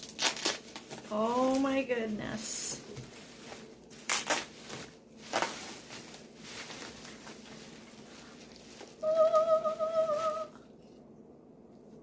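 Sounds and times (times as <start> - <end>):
packing material rustling: 0.0 - 1.8, 2.8 - 9.2.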